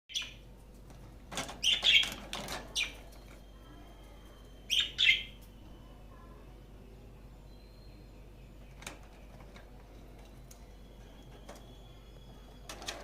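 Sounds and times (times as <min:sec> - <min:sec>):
lovebird chirping: 0:00.1 - 0:00.4, 0:01.6 - 0:05.6, 0:06.8 - 0:12.8.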